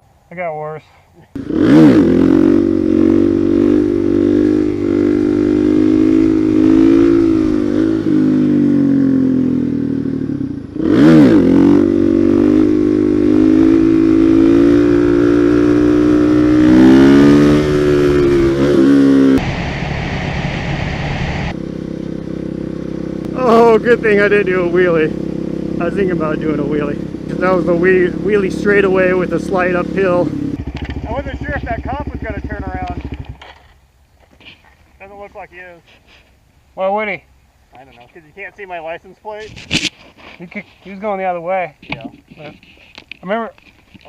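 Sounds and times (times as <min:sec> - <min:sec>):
motorcycle engine revving: 0:01.3 - 0:33.8.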